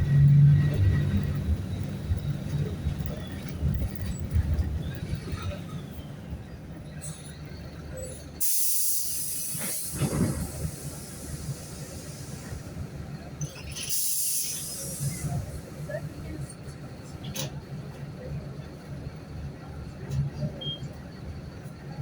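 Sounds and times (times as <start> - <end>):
bus diesel engine running: 0.0 - 22.0.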